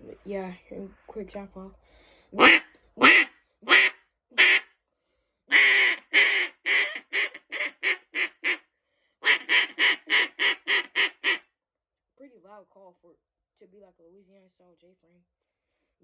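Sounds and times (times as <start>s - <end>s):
duck call quacks: 2.4s - 4.7s, 5.5s - 8.6s, 9.2s - 11.4s.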